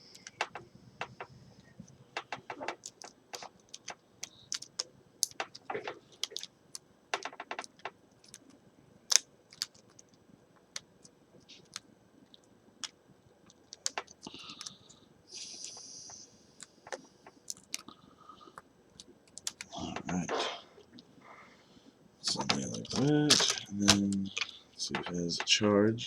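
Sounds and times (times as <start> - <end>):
small clicks and taps of parts: 0.1 - 14.8, 16.6 - 17.9, 18.6 - 20.2.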